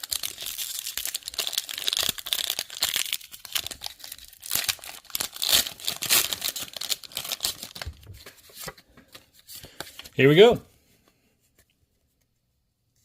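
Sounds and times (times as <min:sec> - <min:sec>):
foil wrapper crinkling and tearing: 0:00.0 - 0:08.0.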